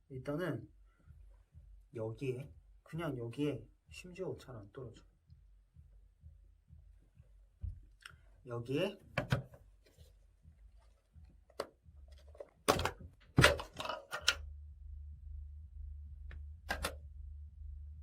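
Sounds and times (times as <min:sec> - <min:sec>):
steady low hum: 0:00.0 - 0:08.7, 0:09.6 - 0:18.0
plastic pieces knocking and clattering: 0:12.2 - 0:14.4.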